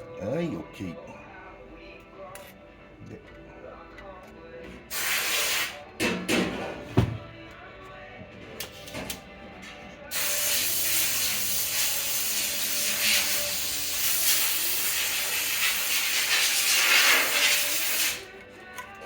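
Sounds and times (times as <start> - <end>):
pressurised hiss: 4.9 - 5.8, 10.1 - 18.3.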